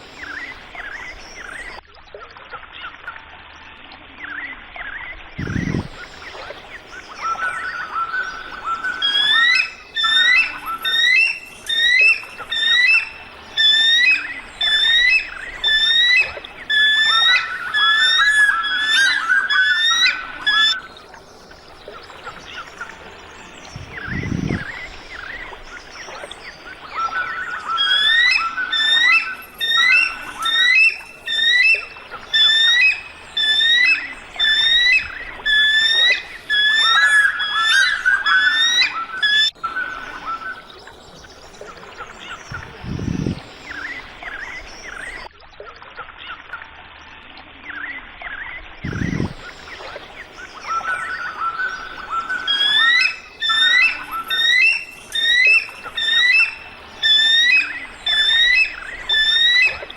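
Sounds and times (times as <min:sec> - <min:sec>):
bird calling high notes: 0:07.1 - 0:21.0, 0:26.6 - 0:40.8, 0:48.8 - 0:59.9.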